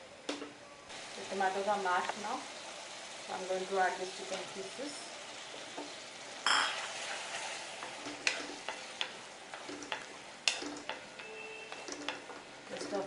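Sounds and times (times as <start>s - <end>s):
chicken sizzling in hot pan: 0.9s - 13.0s
spoon scraping against pan: 6.4s - 13.0s.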